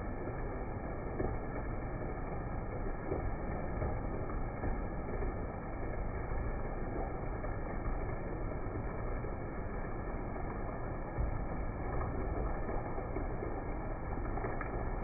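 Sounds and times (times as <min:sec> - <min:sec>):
heavy rain falling: 0:00.0 - 0:15.0.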